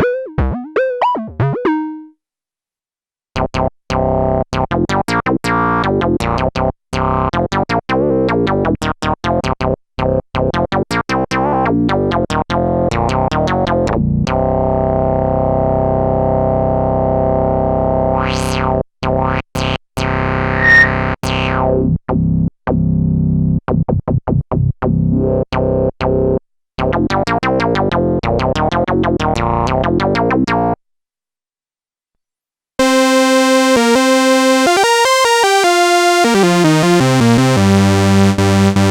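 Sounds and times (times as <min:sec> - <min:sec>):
analog synthesizer notes: 0:20.1 - 0:21.7, 0:32.8 - 0:38.9.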